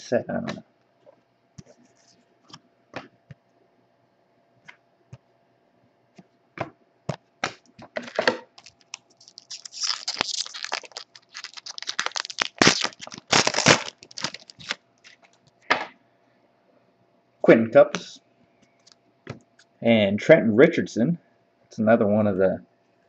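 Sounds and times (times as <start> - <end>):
wrapper tearing and crinkling: 8.0 - 15.5.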